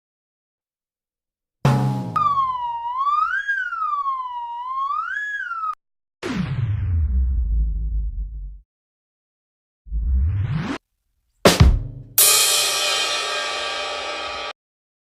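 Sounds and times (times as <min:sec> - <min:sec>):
rising and falling whistle tone: 0:02.2 - 0:05.8.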